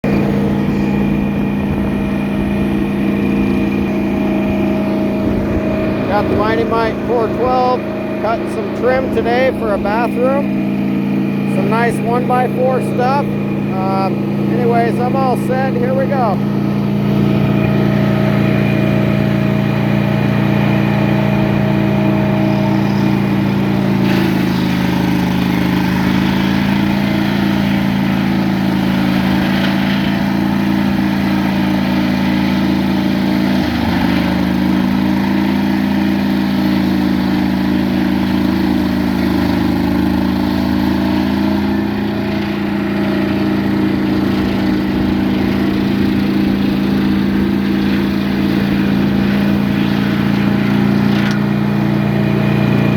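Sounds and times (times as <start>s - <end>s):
sawmill engine running: 0.0s - 52.9s
saw blade rasping through wood: 21.9s - 51.8s.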